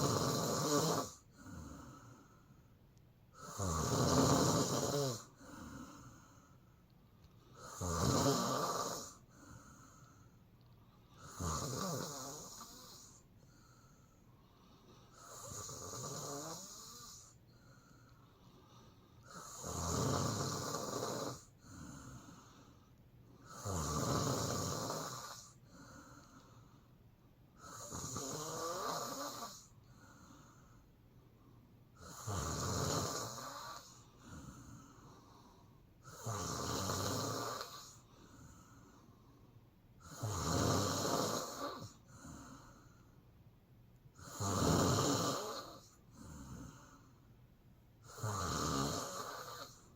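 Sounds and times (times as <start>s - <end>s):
woman snoring: 0.0s - 2.2s, 3.4s - 6.4s, 7.5s - 10.0s, 11.1s - 13.3s, 15.1s - 17.4s, 19.3s - 22.6s, 23.4s - 26.4s, 27.6s - 30.5s, 32.0s - 38.8s, 40.0s - 42.8s, 44.2s - 47.0s, 48.0s - 49.9s
faint breathing: 1.2s - 2.9s, 5.2s - 7.7s, 9.1s - 11.4s, 12.6s - 15.3s, 17.0s - 19.3s, 21.4s - 23.5s, 25.3s - 27.9s, 29.5s - 32.0s, 33.4s - 36.1s, 37.7s - 39.8s, 41.8s - 43.4s, 45.7s - 47.4s.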